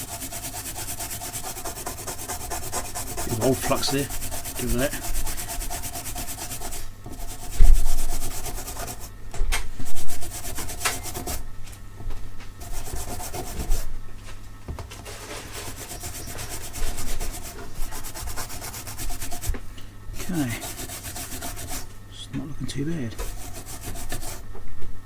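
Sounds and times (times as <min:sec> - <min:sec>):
brush scrubbing circuit board: 0:00.0 - 0:09.1, 0:09.8 - 0:11.4, 0:12.6 - 0:13.9, 0:15.2 - 0:19.5, 0:20.2 - 0:21.9, 0:22.9 - 0:24.4.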